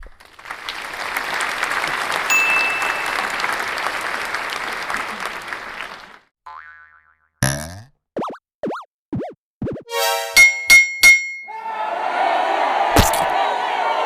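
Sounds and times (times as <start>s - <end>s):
crowd applauding: 0.0s - 6.3s, 11.6s - 14.0s.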